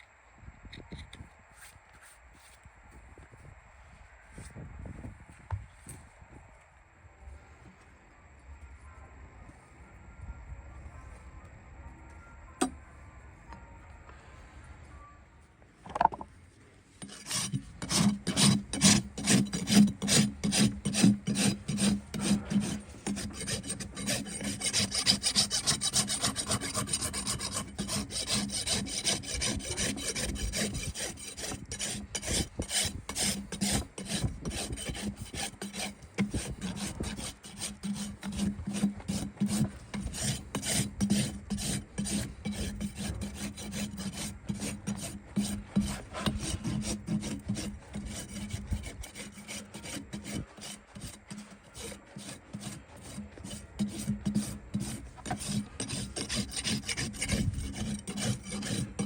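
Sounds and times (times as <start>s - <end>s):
rasp filing hoof: 16.9s - 59.0s.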